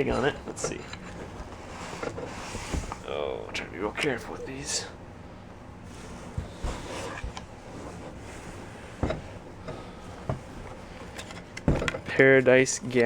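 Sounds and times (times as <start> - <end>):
light knocks and rustles in a box: 0.0 - 3.1, 6.0 - 12.2.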